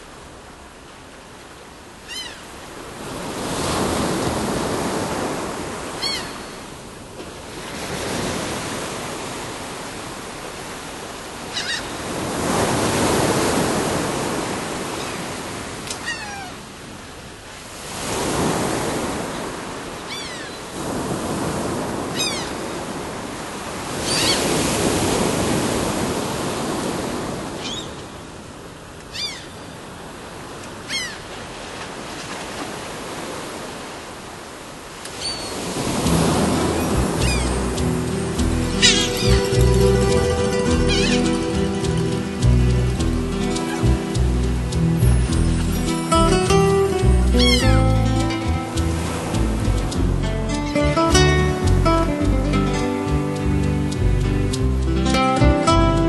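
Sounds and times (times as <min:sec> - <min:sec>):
sea waves washing onto shore: 0:00.0 - 0:56.0
gulls mewing calls: 0:02.0 - 0:02.5, 0:05.9 - 0:06.6, 0:11.5 - 0:12.1, 0:15.9 - 0:16.6, 0:20.0 - 0:20.7, 0:22.1 - 0:22.6, 0:24.0 - 0:24.6, 0:29.1 - 0:29.6, 0:30.9 - 0:31.2, 0:35.1 - 0:48.7.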